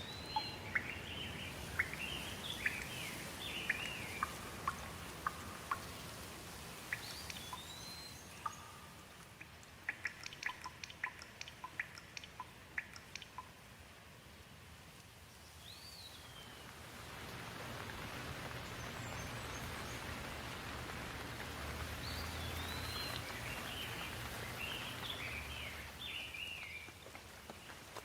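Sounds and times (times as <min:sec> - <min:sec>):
bird chirping: 0:00.0 - 0:06.0, 0:06.8 - 0:13.6, 0:15.5 - 0:16.7, 0:21.9 - 0:26.9
steady rain: 0:00.0 - 0:28.0.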